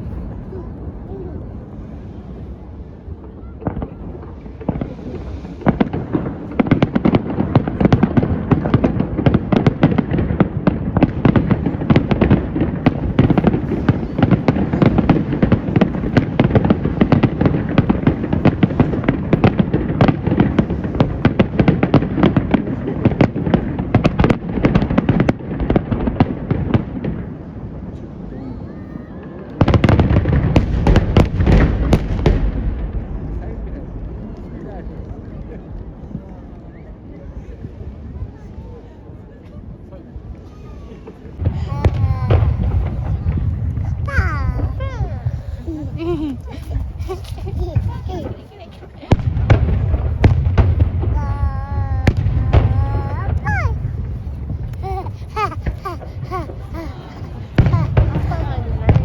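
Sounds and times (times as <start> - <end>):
fireworks booms: 3.2 - 28.2, 29.4 - 35.4, 41.0 - 59.0
fireworks crackling: 3.6 - 27.8, 41.2 - 59.0.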